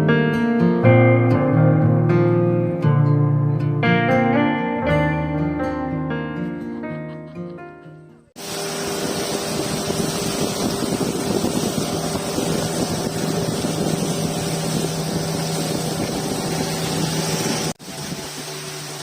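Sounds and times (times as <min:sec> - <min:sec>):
wind noise: 0:08.4 - 0:18.8
motorboat engine running: 0:08.4 - 0:19.0
rushing water: 0:08.4 - 0:19.0.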